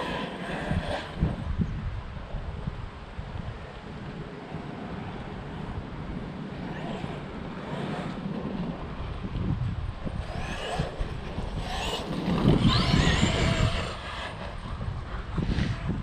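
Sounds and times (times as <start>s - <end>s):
electric toy car motor whining: 0.0s - 1.4s, 6.6s - 8.4s, 10.1s - 15.9s.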